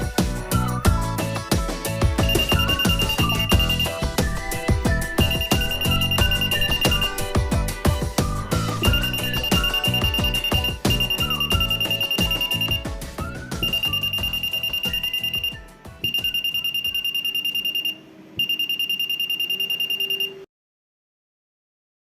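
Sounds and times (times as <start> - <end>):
music with a beat: 0.0 - 16.5
buzzer pulsing alarm beep: 2.2 - 7.4, 8.6 - 12.9, 13.5 - 20.5.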